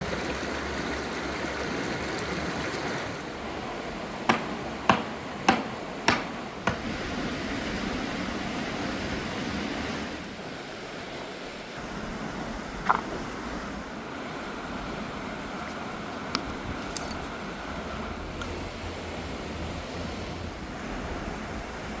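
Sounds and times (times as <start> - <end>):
river rushing: 0.0 - 22.0
sharp knocks: 4.3 - 6.8.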